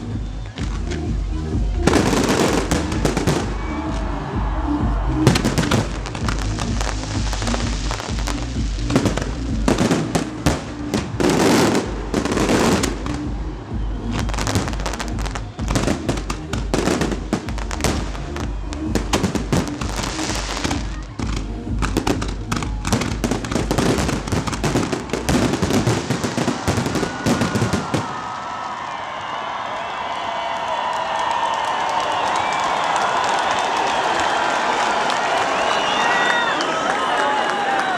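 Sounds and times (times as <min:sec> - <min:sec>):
loud music with bass: 0:00.0 - 0:28.0
fireworks bangs and crackling: 0:01.8 - 0:28.9.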